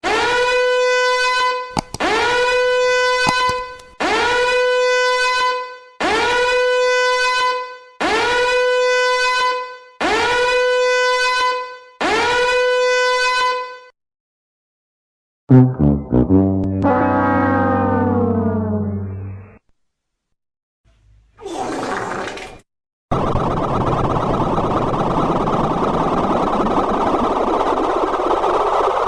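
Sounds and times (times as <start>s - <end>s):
horn blast scooping up in pitch: 15.5s - 19.6s.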